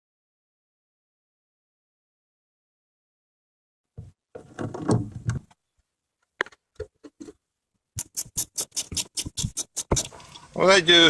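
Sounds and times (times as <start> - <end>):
metal clunks and knocks: 4.0 - 5.5
sharp evenly spaced clicks: 8.0 - 10.2.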